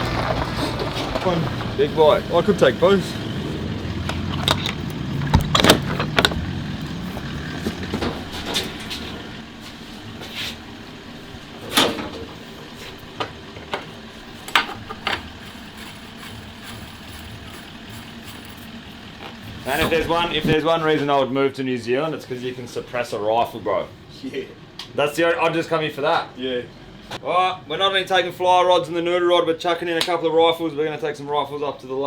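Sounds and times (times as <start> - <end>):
low mechanical rumble: 0.0 - 21.4
sharp clicks and knocks: 4.0 - 6.6.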